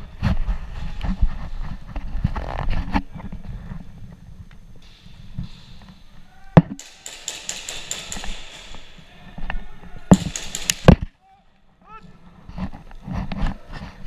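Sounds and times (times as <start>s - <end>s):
airsoft guns firing: 4.8s - 11.2s.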